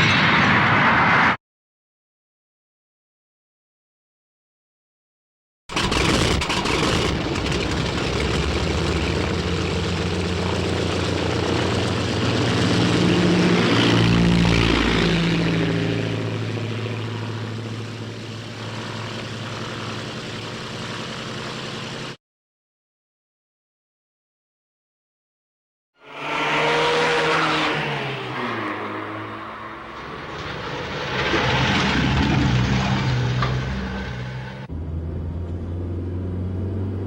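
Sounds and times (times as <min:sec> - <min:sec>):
car engine drone: 0:05.7 - 0:22.2, 0:26.0 - 0:37.0.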